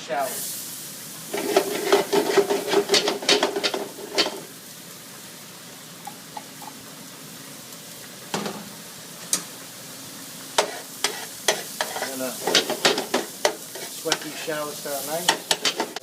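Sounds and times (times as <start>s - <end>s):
shallots sizzling in oil: 0.0s - 16.0s
shallots scraping into pan: 1.2s - 4.6s, 10.5s - 16.0s.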